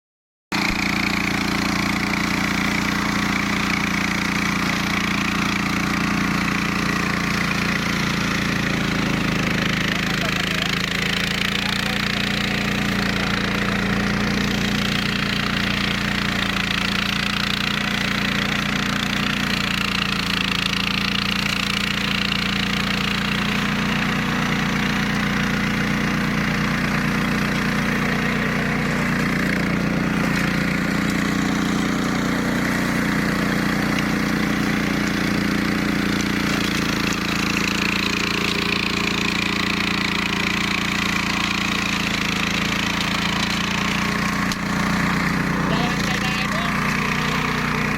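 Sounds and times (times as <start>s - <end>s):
mower engine running steadily: 0.5s - 47.9s.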